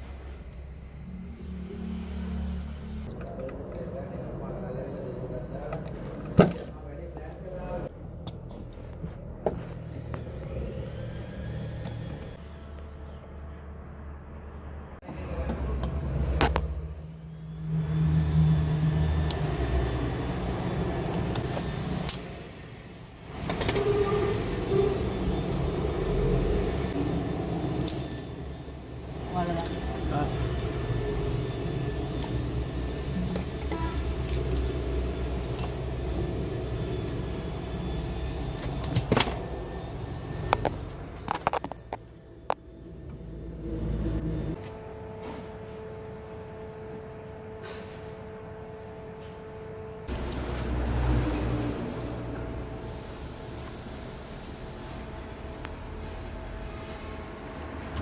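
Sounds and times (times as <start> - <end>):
vehicle engine rumbling: 0.0 - 58.0
sharp metallic clinks: 35.5 - 36.0.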